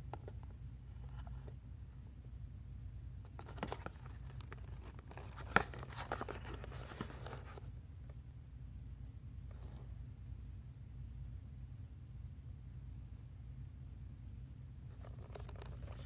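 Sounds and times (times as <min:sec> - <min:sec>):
faint low hum: 0:00.0 - 0:16.0
packaging crinkling and tearing: 0:03.4 - 0:07.6.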